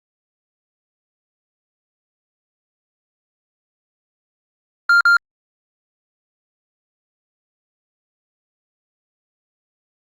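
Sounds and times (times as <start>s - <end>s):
high-pitched electronic beep: 4.9s - 5.2s.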